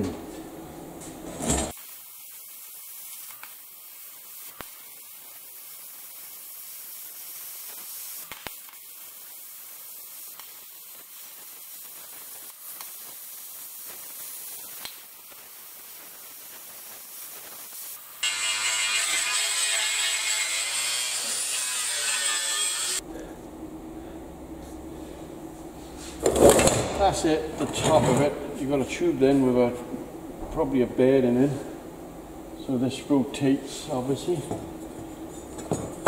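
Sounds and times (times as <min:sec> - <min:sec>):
cutting torch hissing: 0:01.7 - 0:23.0.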